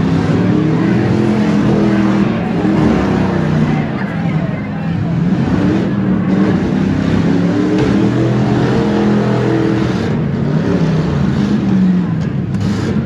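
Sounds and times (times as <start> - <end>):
car engines revving: 0.0 - 13.0.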